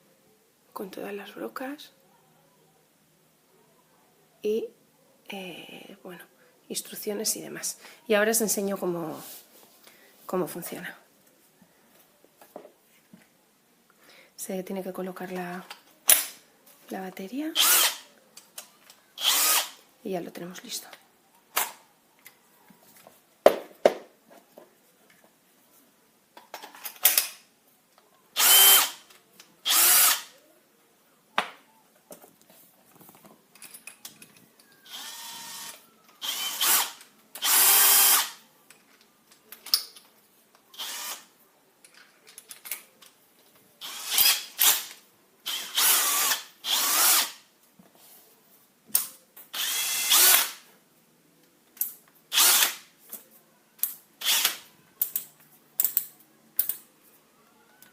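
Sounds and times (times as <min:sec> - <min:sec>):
cordless drill bursts: 0:17.6 - 0:18.0, 0:19.2 - 0:19.8, 0:28.4 - 0:29.0, 0:29.6 - 0:30.3, 0:34.9 - 0:38.4, 0:40.8 - 0:41.3, 0:43.8 - 0:44.9, 0:45.5 - 0:47.4, 0:49.5 - 0:50.6, 0:52.3 - 0:52.8, 0:54.2 - 0:54.6.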